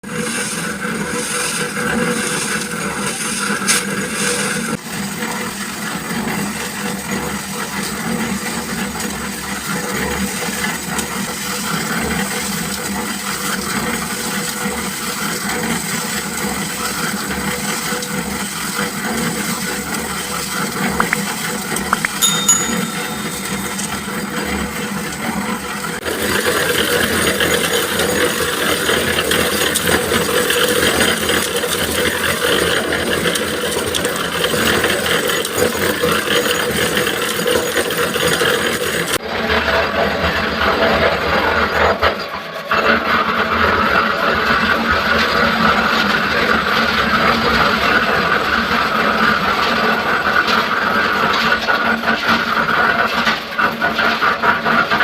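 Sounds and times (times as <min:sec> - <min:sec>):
concrete mixer churning: 0:00.0 - 0:21.6, 0:22.8 - 0:55.0.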